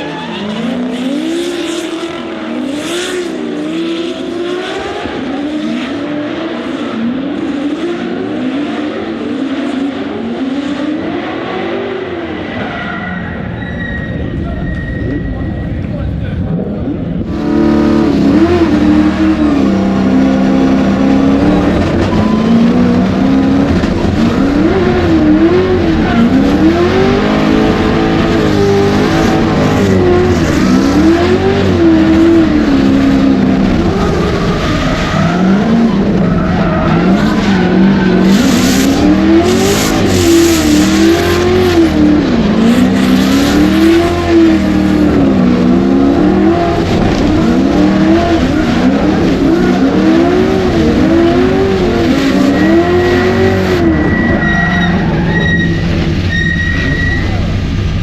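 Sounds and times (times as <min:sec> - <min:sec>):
tyre squeal: 0:00.0 - 0:01.9, 0:12.4 - 0:15.8, 0:22.0 - 0:23.0, 0:52.2 - 0:57.5
car engine revving: 0:00.0 - 0:13.6, 0:14.2 - 0:58.0.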